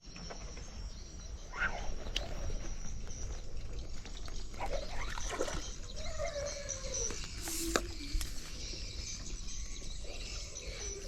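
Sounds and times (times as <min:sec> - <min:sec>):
insect drone: 0:00.0 - 0:11.0
bird calls: 0:00.1 - 0:11.0
trickling water: 0:03.6 - 0:06.0.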